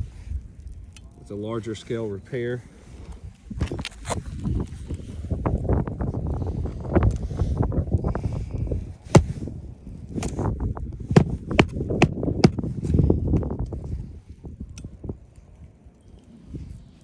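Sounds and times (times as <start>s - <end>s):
metal tool tapping on roof shingles: 11.2s - 12.6s.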